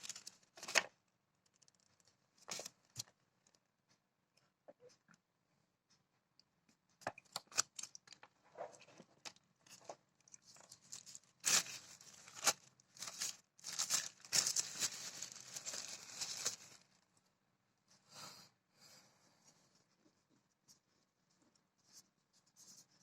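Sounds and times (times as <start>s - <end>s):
packaging clicks and rustles: 7.4s - 17.0s
packaging tearing and crinkling: 10.4s - 16.8s.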